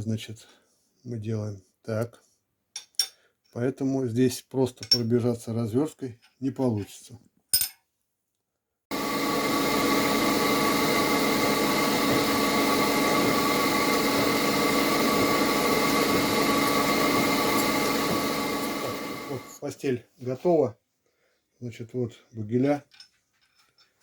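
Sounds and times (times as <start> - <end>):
machine tool whining: 8.9 - 19.6.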